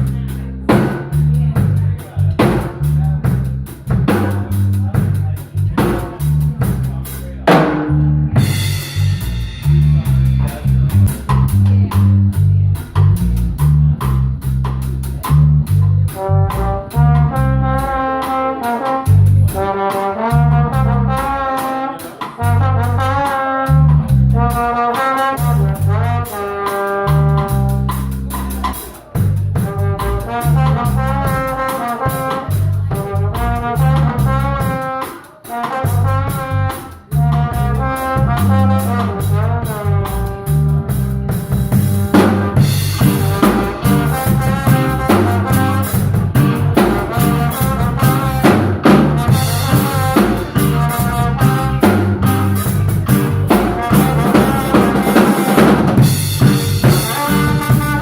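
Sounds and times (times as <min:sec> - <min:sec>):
brass melodic phrases: 0:00.0 - 0:58.0
drum kit beat: 0:00.0 - 0:58.0
heavy bass line: 0:00.0 - 0:58.0.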